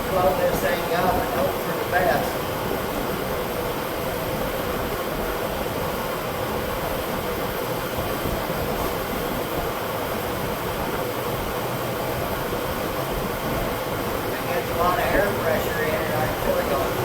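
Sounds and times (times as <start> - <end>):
fan droning: 0.0 - 17.0.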